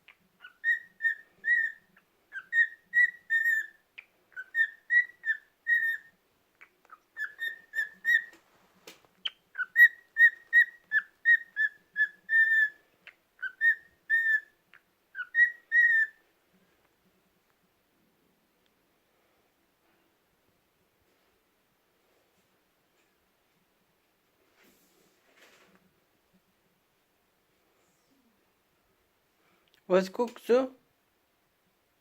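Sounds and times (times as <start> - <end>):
cockatiel whistling: 0.4 - 6.2, 6.9 - 8.4, 9.2 - 12.8, 13.4 - 14.5, 15.1 - 16.2.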